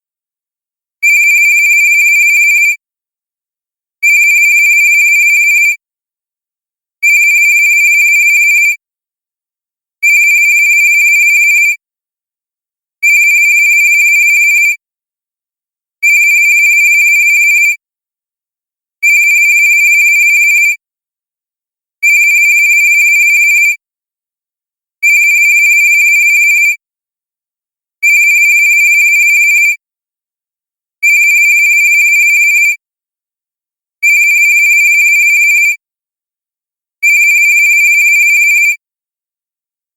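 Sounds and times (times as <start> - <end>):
cell phone ringtone: 37.2 - 38.7.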